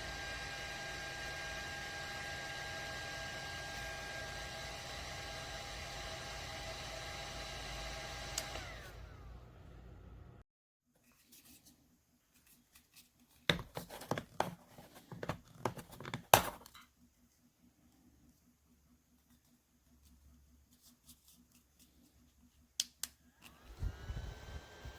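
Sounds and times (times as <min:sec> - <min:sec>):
electric fan whirring: 0:00.0 - 0:10.4, 0:23.0 - 0:24.9.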